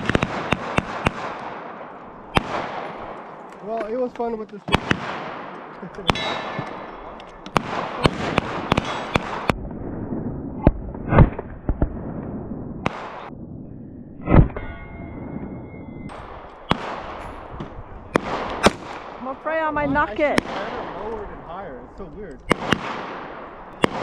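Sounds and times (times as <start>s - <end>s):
pistol shots echoing: 0.0s - 4.1s, 4.7s - 9.6s, 12.8s - 13.3s, 16.1s - 19.5s, 20.1s - 21.1s, 22.4s - 24.0s
loud deep gunshots: 0.0s - 13.5s, 16.1s - 24.0s.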